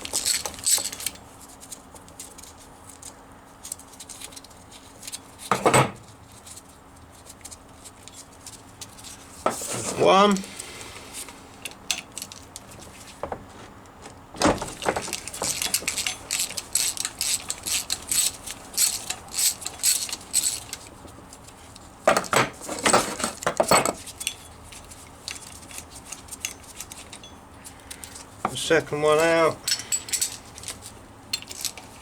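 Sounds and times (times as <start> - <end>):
ratchet clicking: 15.1 - 20.8.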